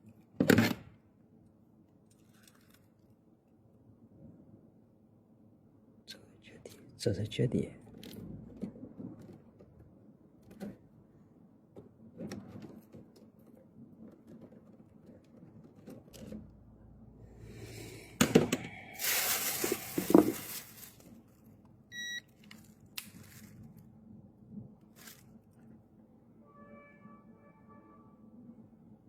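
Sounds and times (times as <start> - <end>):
rustling scrape with knocks: 19.0 - 21.2
short electronic beep: 21.9 - 22.2.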